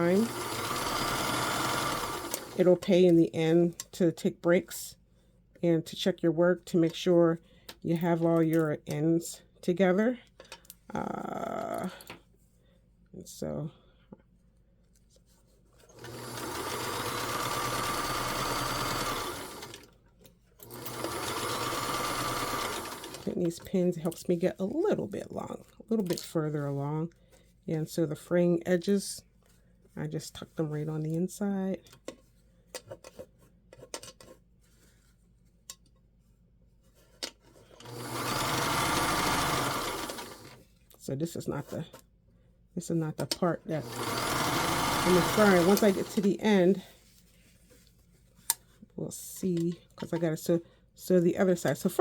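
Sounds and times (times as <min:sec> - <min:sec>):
sewing machine stitching: 0:00.0 - 0:02.8, 0:15.9 - 0:19.9, 0:20.6 - 0:23.4, 0:37.8 - 0:40.6, 0:43.7 - 0:46.7.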